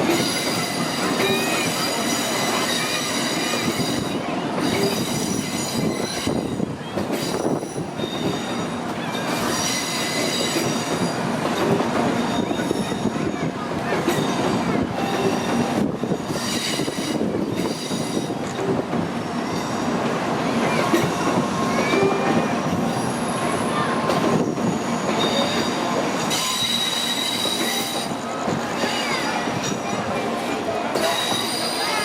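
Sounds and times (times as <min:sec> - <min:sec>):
train rumbling on track: 0:00.0 - 0:32.0
high-pitched wheel squeal: 0:24.8 - 0:28.1, 0:31.0 - 0:32.0.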